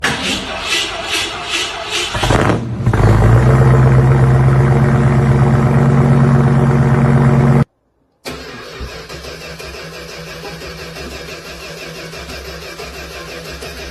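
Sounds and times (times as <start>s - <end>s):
car engine idling loudly: 2.9s - 7.6s.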